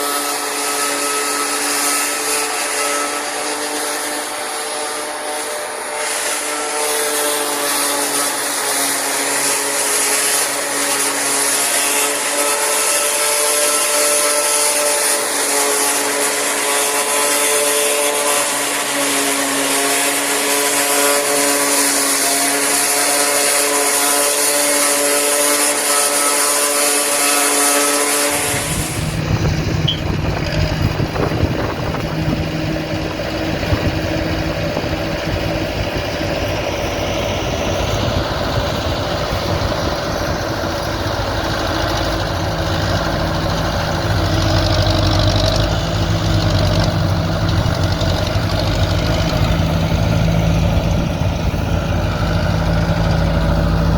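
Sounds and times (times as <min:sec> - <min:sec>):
high-pitched machine whine: 0:00.0 - 0:53.9
low engine drone: 0:27.5 - 0:53.9.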